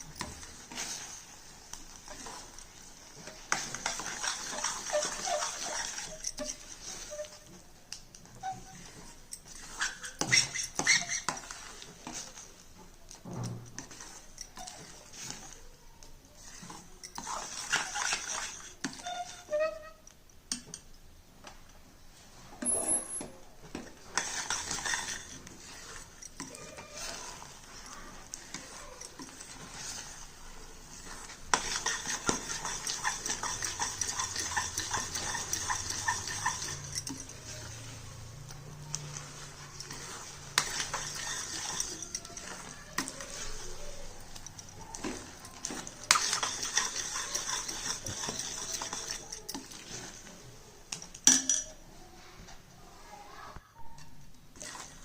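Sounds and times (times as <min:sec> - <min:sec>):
stirring and scraping thick mixture: 0:00.0 - 0:55.0.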